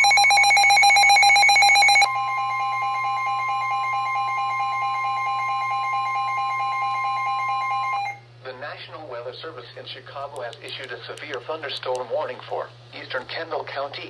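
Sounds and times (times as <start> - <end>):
steady warning alarm tone: 0.0 - 8.2.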